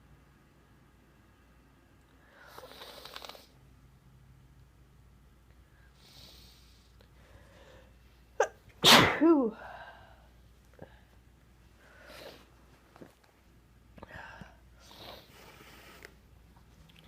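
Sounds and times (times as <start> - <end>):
person sneezing: 8.4 - 9.6.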